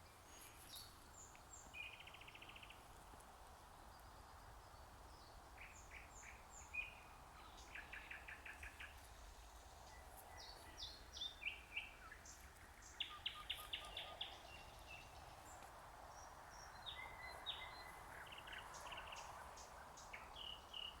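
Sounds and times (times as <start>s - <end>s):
nightingale singing: 9.8s - 15.4s, 16.2s - 21.0s.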